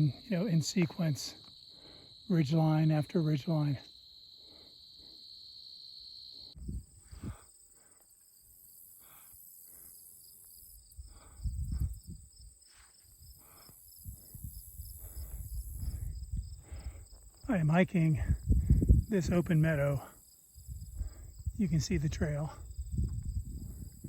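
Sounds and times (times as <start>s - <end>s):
high insect trill: 0.0s - 24.0s
insects buzzing: 0.0s - 24.0s
wind rumbling on microphone: 6.6s - 7.5s, 10.9s - 24.0s.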